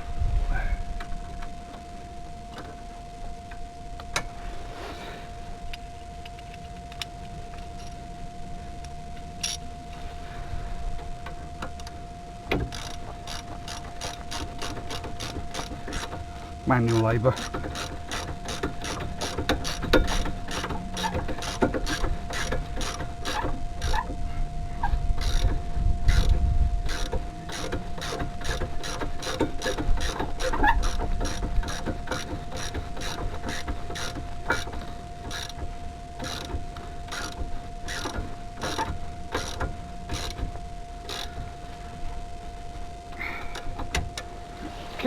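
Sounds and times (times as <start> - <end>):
ratchet wrench ratcheting: 12.6 - 16.2, 17.4 - 24.0, 26.9 - 35.6.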